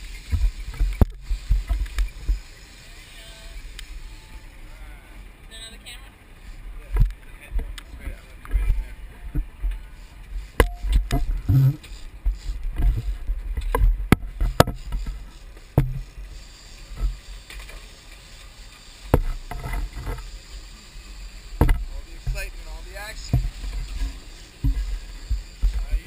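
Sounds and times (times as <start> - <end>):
boat noise: 0.0 - 26.0
sharp knocks and thumps: 10.6 - 16.2, 19.1 - 20.3, 21.6 - 26.0.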